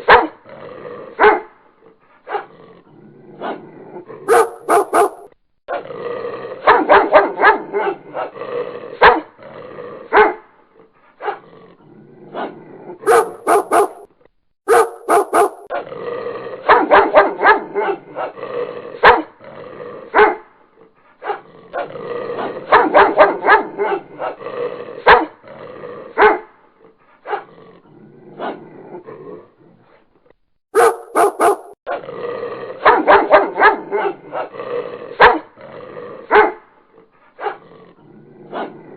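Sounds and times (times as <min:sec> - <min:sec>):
dog barking: 0:00.0 - 0:00.4, 0:01.2 - 0:01.6, 0:04.3 - 0:05.4, 0:06.6 - 0:08.0, 0:09.0 - 0:09.3, 0:10.1 - 0:10.5, 0:13.0 - 0:14.1, 0:14.7 - 0:15.7, 0:16.6 - 0:18.0, 0:19.0 - 0:19.3, 0:20.1 - 0:20.5, 0:22.7 - 0:24.4, 0:25.0 - 0:25.4, 0:26.2 - 0:26.5, 0:30.7 - 0:32.0, 0:32.8 - 0:34.4, 0:35.2 - 0:35.5, 0:36.3 - 0:36.7.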